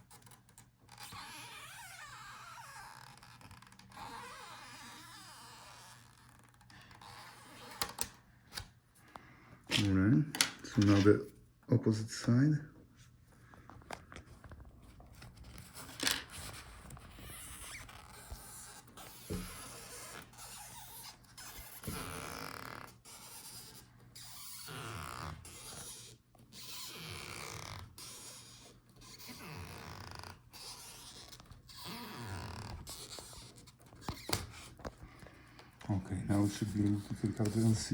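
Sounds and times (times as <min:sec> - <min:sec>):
adhesive strip stretching and rubbing: 0:00.0 - 0:08.8, 0:15.0 - 0:35.2.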